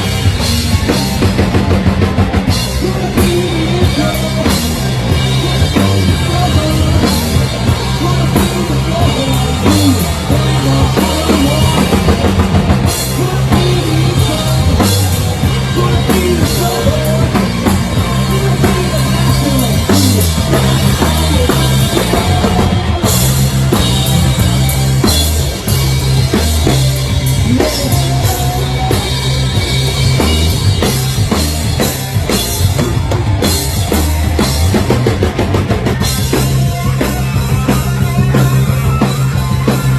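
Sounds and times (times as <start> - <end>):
drum kit rock beat: 0.0 - 39.9
electric guitar and bass: 0.0 - 39.9.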